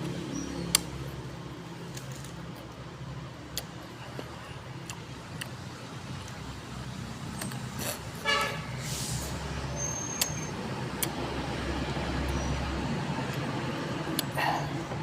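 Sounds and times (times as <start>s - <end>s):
road traffic rumble: 0.0s - 15.0s
car horn toot: 8.2s - 8.7s.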